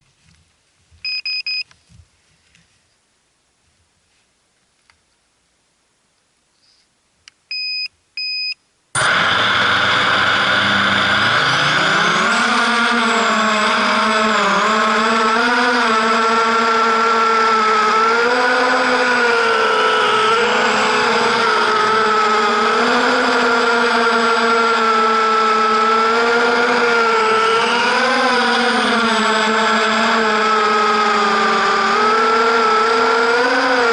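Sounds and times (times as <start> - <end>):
short beeps: 1.0 - 1.7, 7.5 - 8.6
quadcopter motors whining: 9.0 - 33.9.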